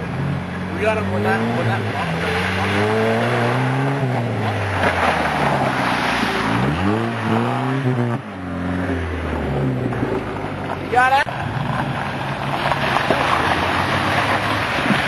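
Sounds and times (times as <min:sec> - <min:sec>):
truck engine revving: 0:00.0 - 0:10.6.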